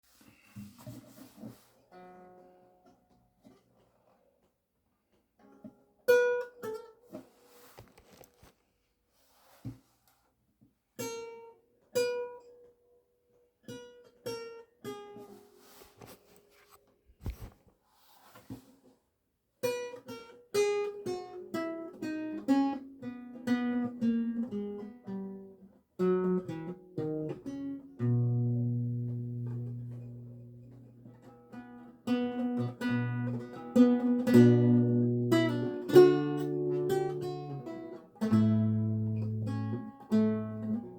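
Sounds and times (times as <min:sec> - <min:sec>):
lute plucked notes: 0:19.6 - 0:40.9.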